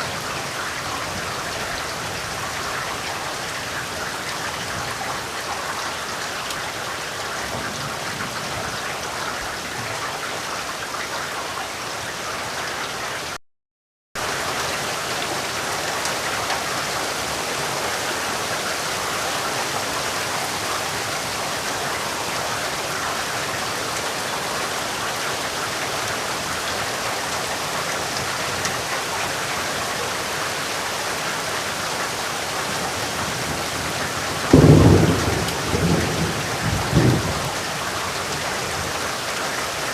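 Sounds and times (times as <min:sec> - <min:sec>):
steady rain falling: 0:00.0 - 0:13.4, 0:14.2 - 0:39.9.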